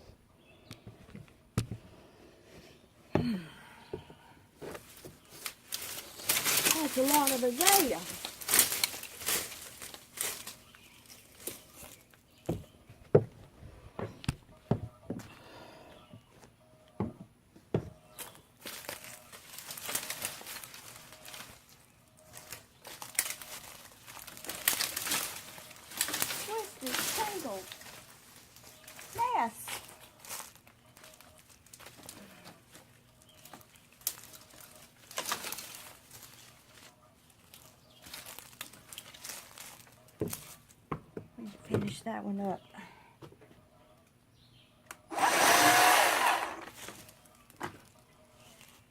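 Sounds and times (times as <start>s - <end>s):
branches rustling: 4.6s - 12.6s, 18.1s - 40.8s, 45.1s - 48.9s
twigs cracking: 4.8s - 12.2s, 18.2s - 40.7s.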